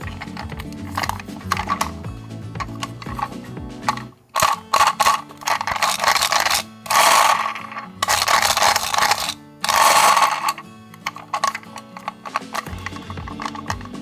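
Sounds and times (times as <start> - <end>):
background music: 0.0 - 14.0
toy cars rolling down slope: 0.0 - 14.0.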